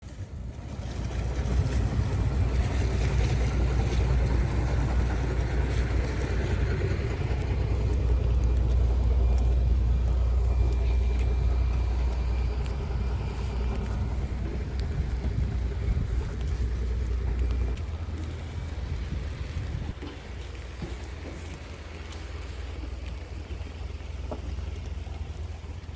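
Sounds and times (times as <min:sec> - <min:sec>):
moving vehicle rumble: 0:00.0 - 0:25.9.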